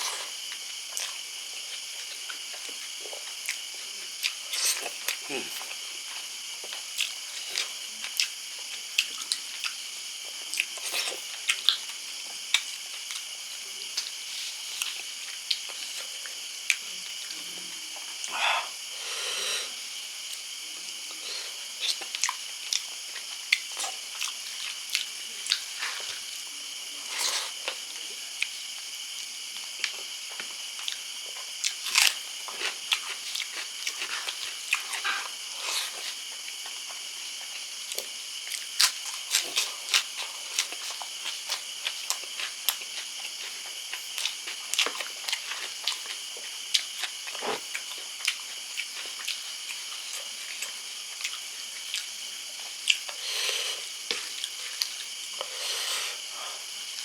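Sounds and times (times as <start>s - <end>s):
person chewing and mouth noises: 0.0s - 19.6s, 20.2s - 57.0s
high chirring hiss: 8.9s - 44.3s, 47.8s - 57.0s.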